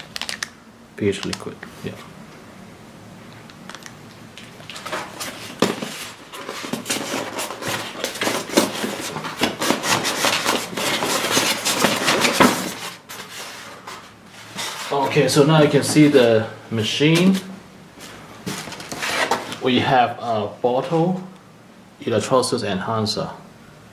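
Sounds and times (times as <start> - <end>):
hands rustling packing material: 4.4 - 16.3.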